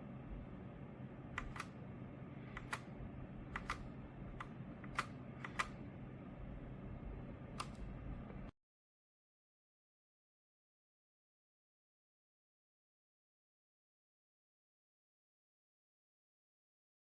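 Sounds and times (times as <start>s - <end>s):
steady low hum: 0.0s - 8.5s
mechanical keyboard key clicks: 1.4s - 1.7s, 2.6s - 2.9s, 3.5s - 5.8s, 7.6s - 7.9s.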